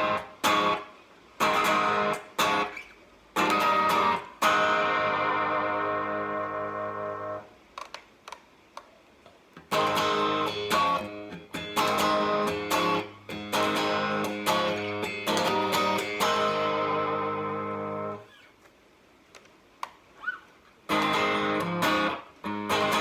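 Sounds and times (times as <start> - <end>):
overdriven electric guitar chords: 0.0 - 2.8, 3.4 - 7.6, 9.6 - 18.2, 20.9 - 23.0.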